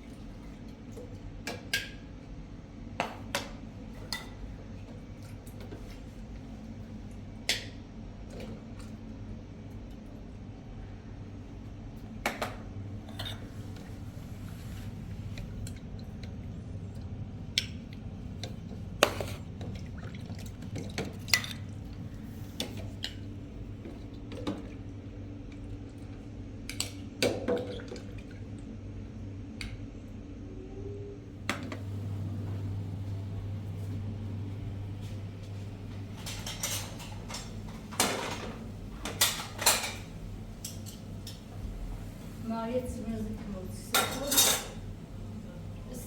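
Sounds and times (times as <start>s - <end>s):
low hum: 30.4s - 43.6s
dishes clinking: 34.3s - 42.3s, 43.9s - 44.9s.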